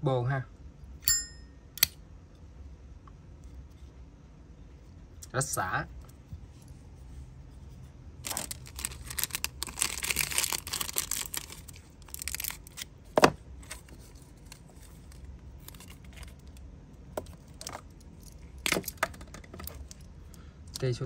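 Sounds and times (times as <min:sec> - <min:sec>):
wrapping crinkling and tearing: 0:08.2 - 0:12.9, 0:13.6 - 0:16.6.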